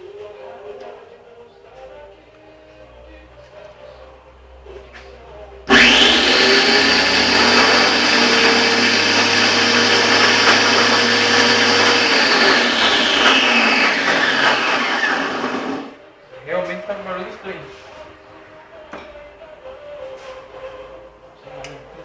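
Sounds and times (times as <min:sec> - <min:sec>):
pressure washer running: 0:05.7 - 0:16.0.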